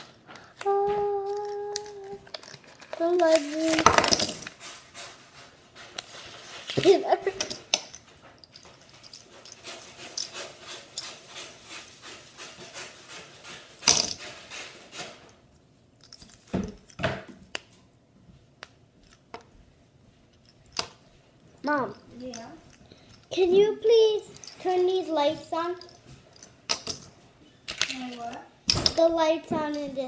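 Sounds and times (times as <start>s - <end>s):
fidget spinner rubbing and scraping: 9.1s - 15.4s.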